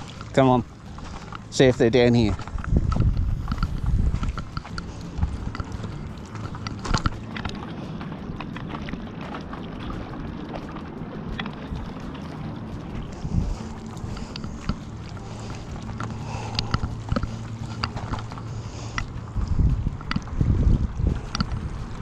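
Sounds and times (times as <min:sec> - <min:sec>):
crunching footsteps: 0:00.0 - 0:07.6
wind rumbling on microphone: 0:00.0 - 0:22.0
small clicks: 0:21.2 - 0:21.6.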